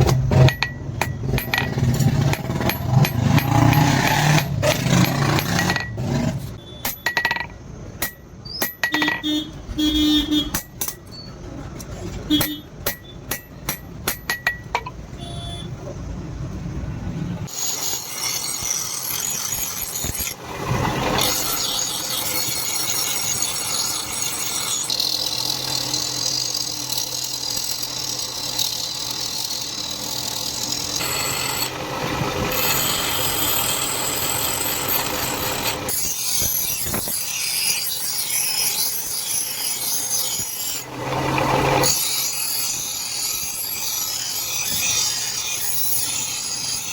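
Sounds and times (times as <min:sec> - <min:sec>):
grinder motor hum: 0:00.0 - 0:06.6, 0:25.2 - 0:36.0
blade rasping on grinder: 0:00.1 - 0:06.6, 0:17.5 - 0:46.9.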